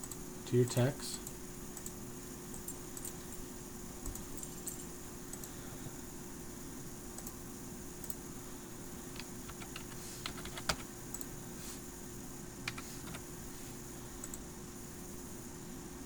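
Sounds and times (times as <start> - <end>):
faint hum and hiss: 0.0 - 16.0
keyboard typing: 9.2 - 11.3, 12.6 - 13.3.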